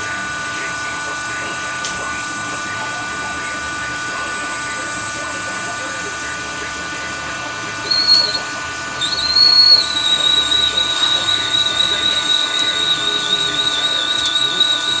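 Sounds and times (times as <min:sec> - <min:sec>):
machine humming: 0:00.0 - 0:15.0
lathe cut whistling squeal: 0:07.6 - 0:15.0.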